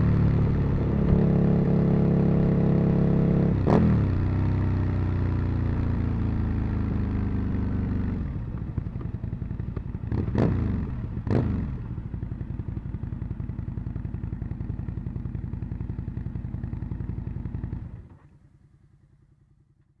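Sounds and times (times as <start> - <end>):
motorcycle engine idling and blipping: 0.0 - 20.0.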